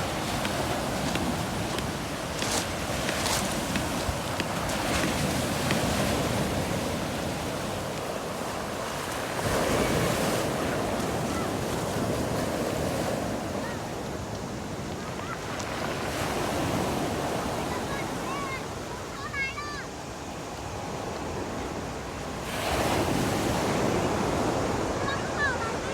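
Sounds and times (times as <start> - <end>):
wind buffeting microphone: 0.0 - 15.1
sea waves washing onto shore: 0.0 - 19.8, 20.5 - 25.9.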